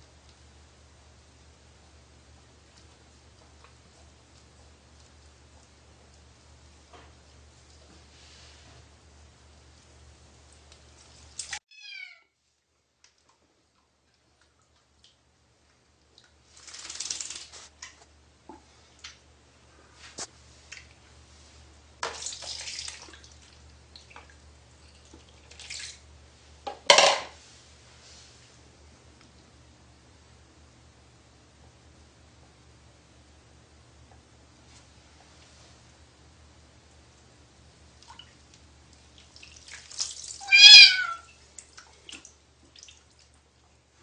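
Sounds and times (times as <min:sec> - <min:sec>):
water splashing in a bathtub: 0:09.0 - 0:11.6, 0:13.0 - 0:19.3, 0:20.3 - 0:26.3, 0:37.9 - 0:44.0
cat meowing loudly: 0:11.7 - 0:12.4, 0:40.4 - 0:41.3.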